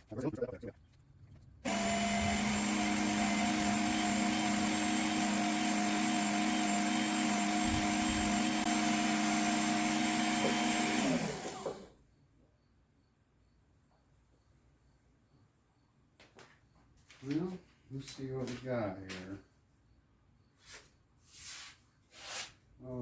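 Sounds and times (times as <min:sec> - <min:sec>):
electric sharpener motor and belt whirring: 0:01.7 - 0:11.9
motor spinning down: 0:01.7 - 0:11.9.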